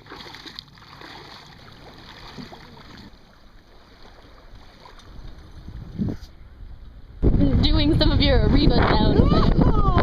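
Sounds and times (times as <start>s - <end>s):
water washing along a boat hull: 0.0s - 6.0s
wind rumble on microphone: 4.5s - 10.0s.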